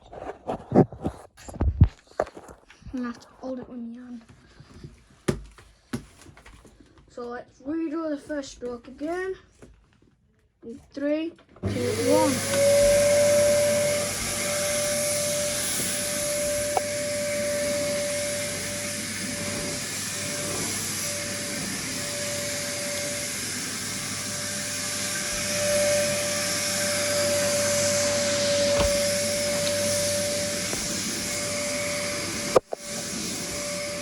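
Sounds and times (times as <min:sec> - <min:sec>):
vacuum cleaner running: 0:11.6 - 0:34.0.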